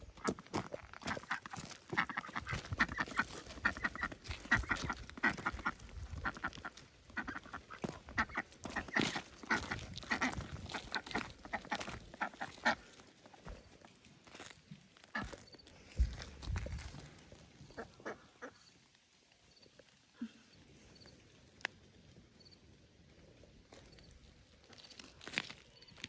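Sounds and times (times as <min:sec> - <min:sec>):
ducks and geese quacking: 0:01.0 - 0:13.0, 0:15.1 - 0:15.4, 0:17.8 - 0:18.7.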